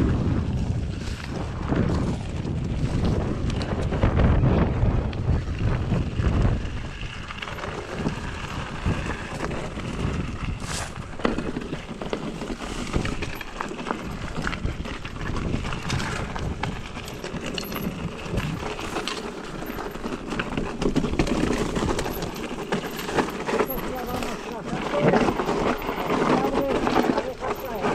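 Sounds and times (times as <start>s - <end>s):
bike tyres on dirt and stones: 0.0s - 27.9s
wind buffeting microphone: 0.0s - 27.9s
rattling clicks and knocks: 15.8s - 27.9s.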